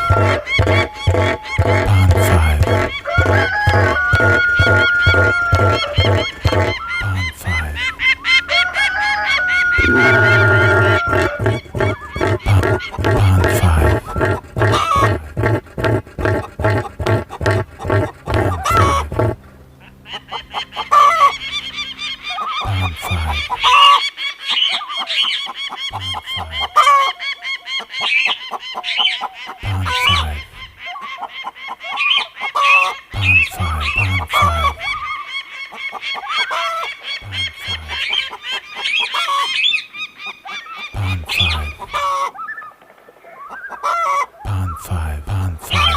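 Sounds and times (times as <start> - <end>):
held steady tone: 0.0 - 7.7, 9.8 - 19.4
cartoon birds honking: 0.0 - 31.3, 32.0 - 39.9, 40.6 - 42.8, 43.4 - 45.9
cartoon bird honks and squawks: 8.7 - 15.2.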